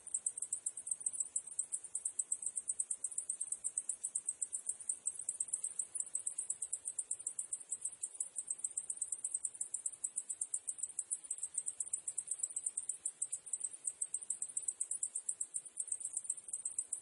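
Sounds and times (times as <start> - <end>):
cicadas chirping: 0.0 - 17.0.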